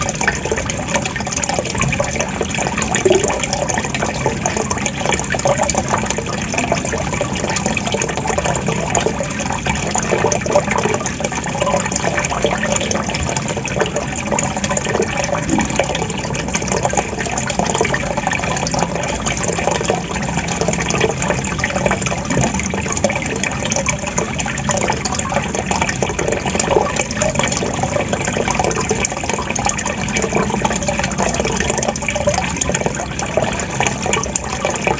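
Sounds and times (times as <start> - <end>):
small bubbling splashes: 0.0 - 34.9
water trickling and gurgling: 0.0 - 34.9.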